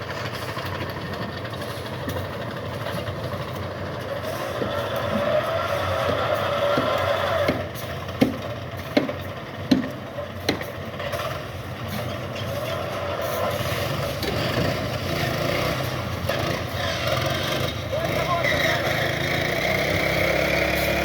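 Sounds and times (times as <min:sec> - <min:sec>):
engine running: 0:00.0 - 0:21.0
sharp knocks: 0:08.2 - 0:09.9.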